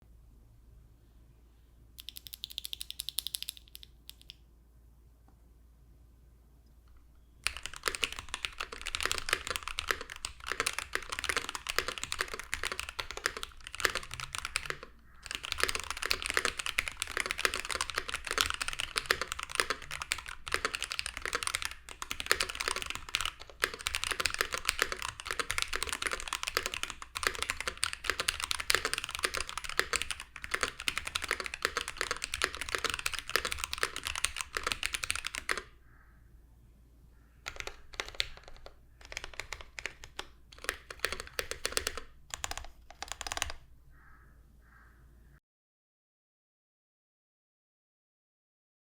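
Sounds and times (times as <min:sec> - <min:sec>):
fast mechanical keyboard typing: 0:02.0 - 0:04.3, 0:07.4 - 0:35.7, 0:37.4 - 0:43.7.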